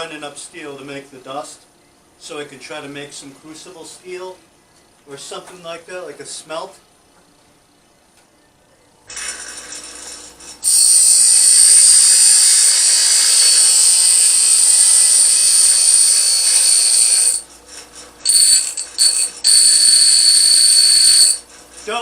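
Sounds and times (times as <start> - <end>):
power grinder grinding steel: 9.1 - 17.5, 18.2 - 21.4.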